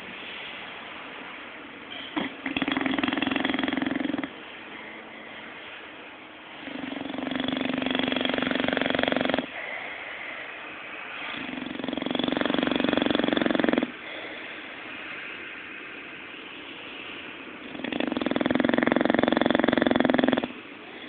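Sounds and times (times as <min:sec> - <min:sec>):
dog snoring: 0:01.9 - 0:04.4, 0:06.6 - 0:09.8, 0:11.2 - 0:14.4, 0:17.6 - 0:21.0
dog breathing softly: 0:09.4 - 0:11.8.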